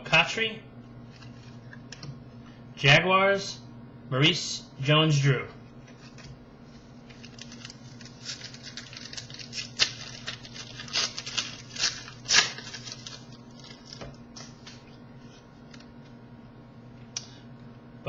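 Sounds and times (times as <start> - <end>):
low steady hum: 0.0 - 18.0
cards and packaging rustling: 7.0 - 14.9.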